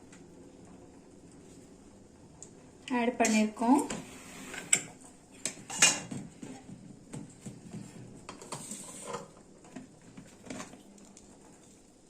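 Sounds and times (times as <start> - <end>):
spoon scraping a pot: 8.3 - 9.4.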